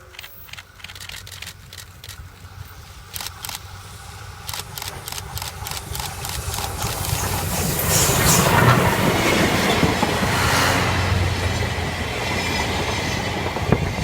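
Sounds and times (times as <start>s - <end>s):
sharp irregular clicks: 0.0s - 2.2s, 3.1s - 3.7s, 4.4s - 7.3s
steam train rumble: 0.0s - 14.0s.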